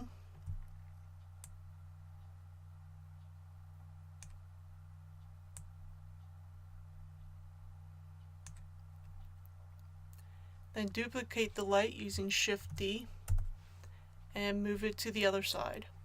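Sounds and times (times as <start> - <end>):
low electrical hum: 0.0 - 16.0
faint computer clicks: 4.2 - 4.4.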